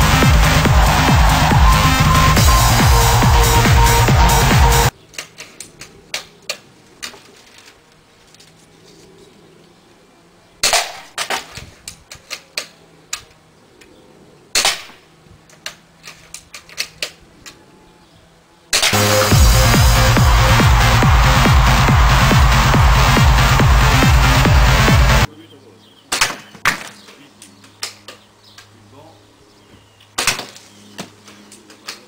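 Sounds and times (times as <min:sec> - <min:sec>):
airsoft rifle shots: 0:10.6 - 0:11.5, 0:14.6 - 0:15.0.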